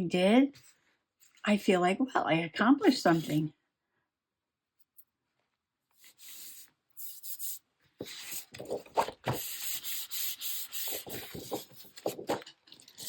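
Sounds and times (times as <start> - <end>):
paper rustling on a desk: 8.0 - 13.0.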